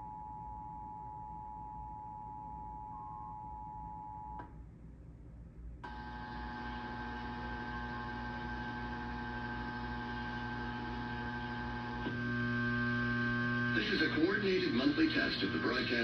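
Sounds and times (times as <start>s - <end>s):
steady hum: 0.0s - 16.0s.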